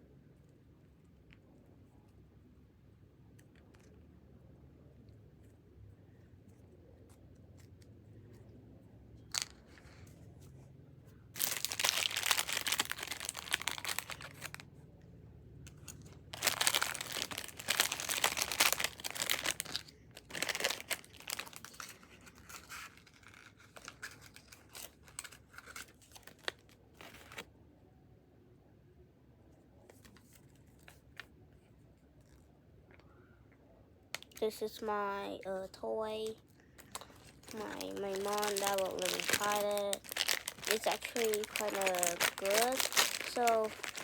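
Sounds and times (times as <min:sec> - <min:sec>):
wrapper tearing and crinkling: 0:11.4 - 0:14.6, 0:15.7 - 0:27.4, 0:36.8 - 0:44.0.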